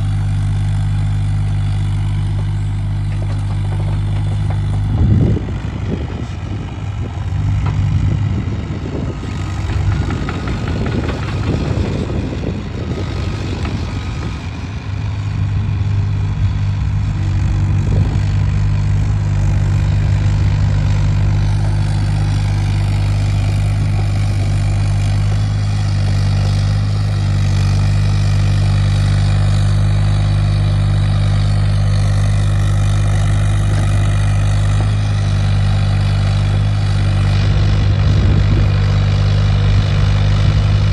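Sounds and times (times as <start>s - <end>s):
excavator diesel engine humming: 0.0s - 40.9s
knocks and scraping: 2.2s - 15.4s.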